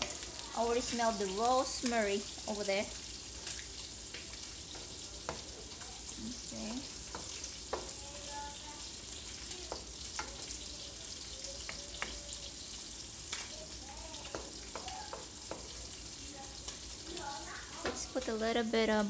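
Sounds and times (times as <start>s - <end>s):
meat sizzling in a pan: 0.0s - 19.0s
utensil clicking against pan: 3.4s - 6.1s, 6.9s - 8.0s, 9.7s - 12.3s, 13.2s - 16.0s.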